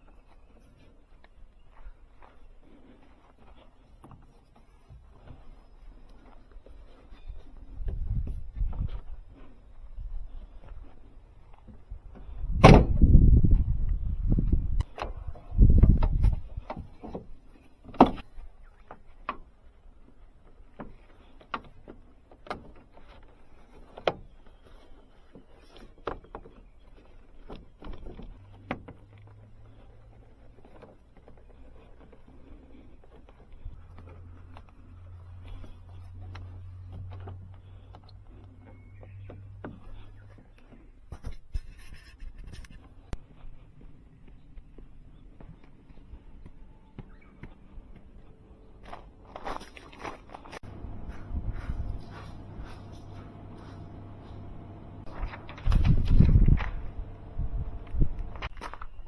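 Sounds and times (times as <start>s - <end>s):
low steady hum: 42.8s - 59.0s.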